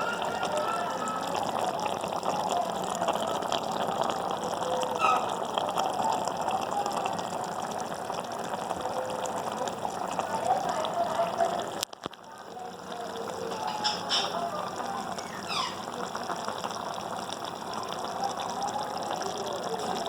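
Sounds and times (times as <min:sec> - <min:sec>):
food bubbling in liquid: 0:00.0 - 0:20.0
small crackles: 0:11.7 - 0:20.0.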